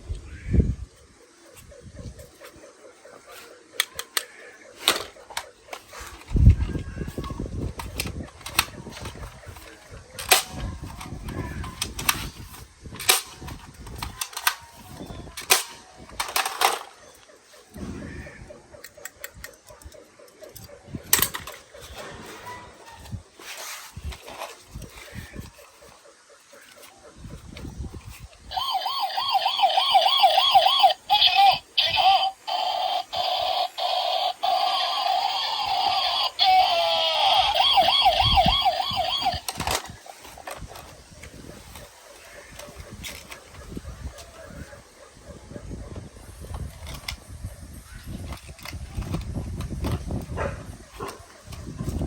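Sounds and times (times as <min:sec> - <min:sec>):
toy gun cracks: 0:03.8 - 0:06.3, 0:07.2 - 0:17.1, 0:18.9 - 0:21.6, 0:28.5 - 0:40.9
toy siren warbling: 0:24.2 - 0:40.6.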